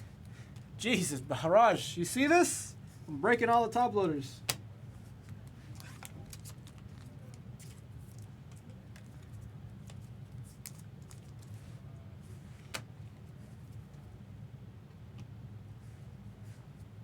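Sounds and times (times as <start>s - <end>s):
steady low hum: 0.0s - 17.0s
cards rustling: 5.1s - 11.7s.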